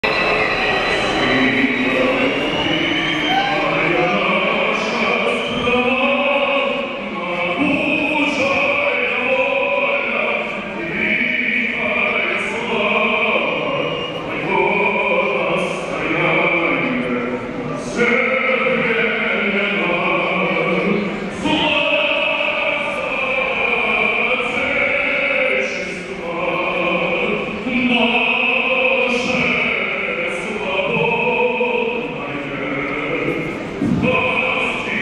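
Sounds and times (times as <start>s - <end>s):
crowd whistling loudly: 0.0s - 6.5s
crowd singing an anthem: 0.0s - 35.0s.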